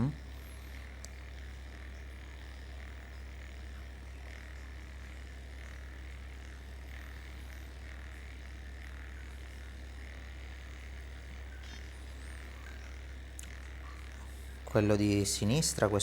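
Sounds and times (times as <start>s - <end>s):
vibration device buzzing: 0.0s - 16.0s.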